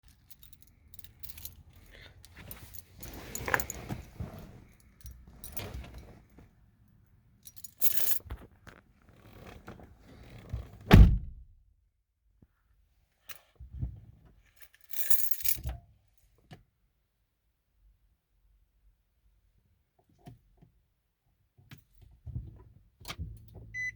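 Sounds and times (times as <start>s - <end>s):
car keys jangling: 0.1s - 6.1s
heavy thump: 10.9s - 11.4s.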